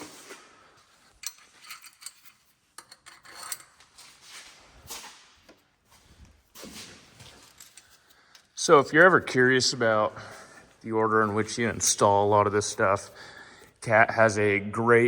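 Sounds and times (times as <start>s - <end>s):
small steel hardware clinking: 1.1s - 3.8s, 7.4s - 8.6s.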